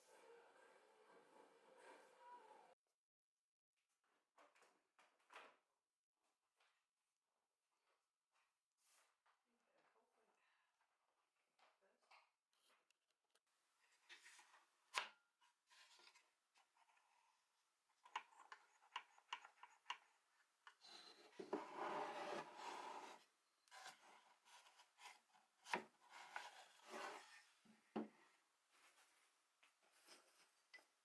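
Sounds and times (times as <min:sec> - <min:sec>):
wood scraping on wood: 0:20.7 - 0:28.1.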